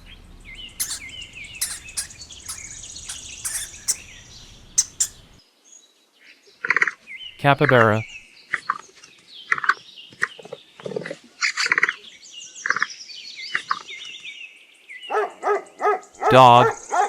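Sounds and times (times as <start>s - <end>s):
birds chirping: 0.0s - 5.4s, 7.2s - 8.2s, 15.0s - 17.0s
capybara squeaking: 0.6s - 5.4s, 15.1s - 17.0s.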